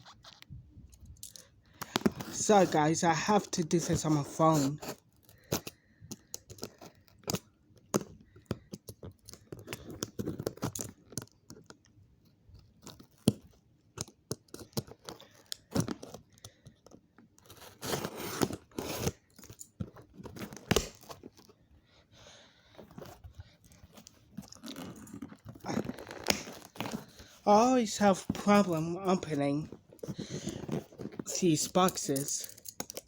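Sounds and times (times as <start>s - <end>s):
cardboard box tearing and crunching: 17.4s - 19.3s, 20.0s - 21.4s, 24.2s - 31.3s.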